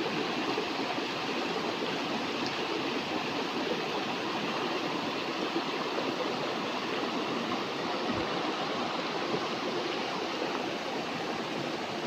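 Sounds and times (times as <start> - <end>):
flowing stream water: 0.0 - 12.0.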